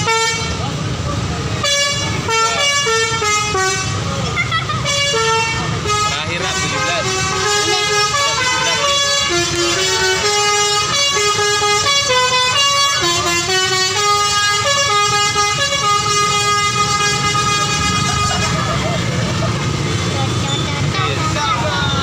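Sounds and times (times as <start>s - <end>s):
musical air horns melody: 0.0s - 0.6s, 1.6s - 4.0s, 4.8s - 18.9s
bus engines rumbling: 0.0s - 22.0s.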